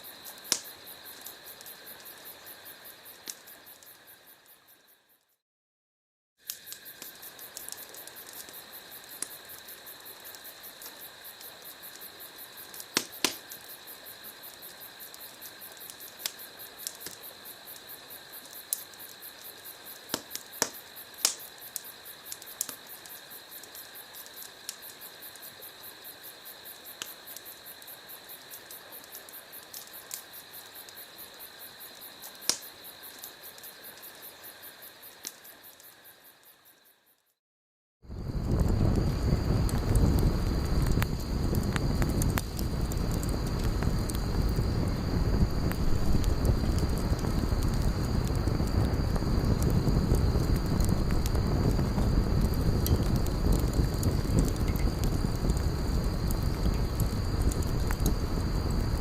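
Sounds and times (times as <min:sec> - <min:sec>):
campfire wood popping: 0:00.0 - 0:04.1, 0:06.4 - 0:36.0, 0:38.1 - 0:59.0
crickets chirping: 0:00.0 - 0:05.4, 0:06.4 - 0:37.4, 0:38.0 - 0:59.0.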